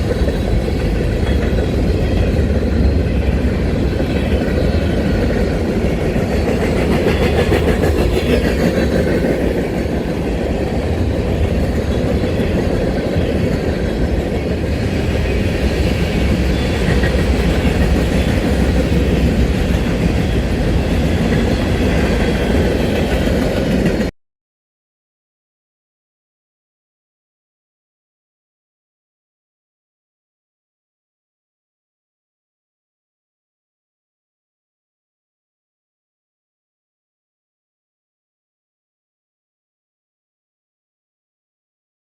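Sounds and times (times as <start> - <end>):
train wheels rumbling on rails: 0.0 - 24.1.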